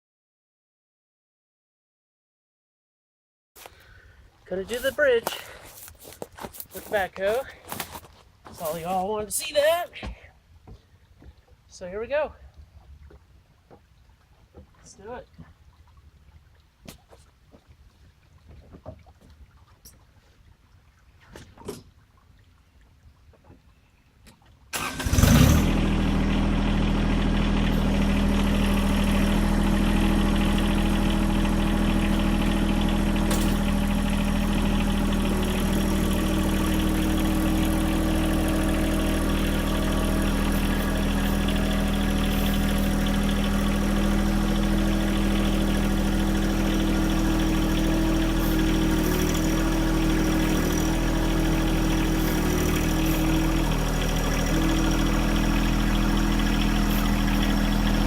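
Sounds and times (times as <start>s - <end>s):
tractor diesel engine running: 4.4s - 9.8s, 24.7s - 58.0s.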